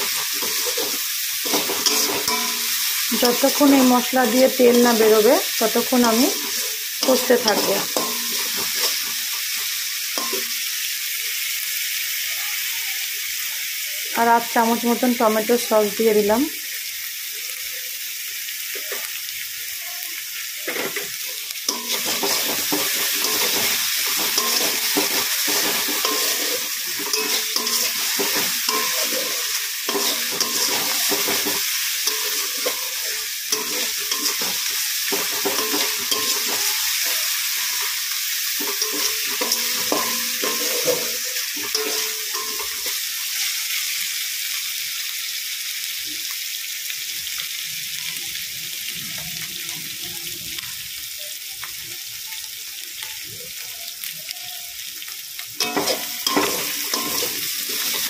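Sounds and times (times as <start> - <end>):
spatula scraping pan: 0.0 - 5.2, 5.8 - 9.6, 21.7 - 43.0, 55.6 - 58.0
onion masala sizzling in oil: 0.0 - 58.0.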